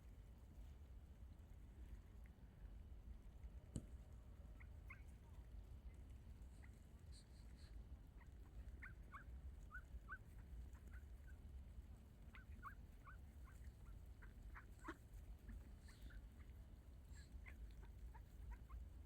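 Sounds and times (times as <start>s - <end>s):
faint bird chirps: 4.5s - 5.3s, 6.6s - 11.4s, 12.3s - 16.5s.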